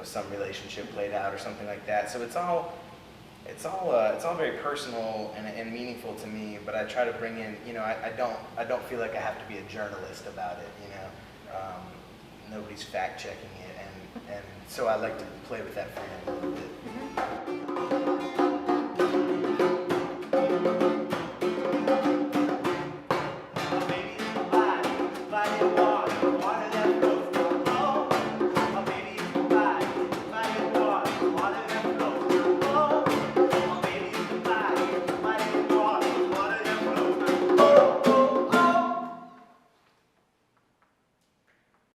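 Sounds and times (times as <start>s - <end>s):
drums keeping a steady beat: 15.9s - 39.1s
plucked strings: 16.3s - 39.0s
person singing: 23.6s - 39.3s.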